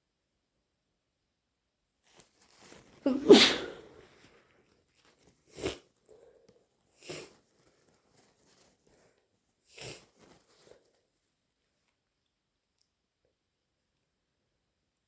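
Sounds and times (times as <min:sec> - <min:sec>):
congested nose sniffing: 0:07.0 - 0:07.4, 0:09.7 - 0:10.4.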